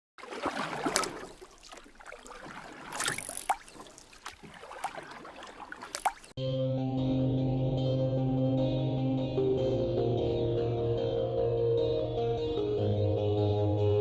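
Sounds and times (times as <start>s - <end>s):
paddle stroke splashes: 0.2s - 6.4s
water splashing and lapping: 0.2s - 6.4s.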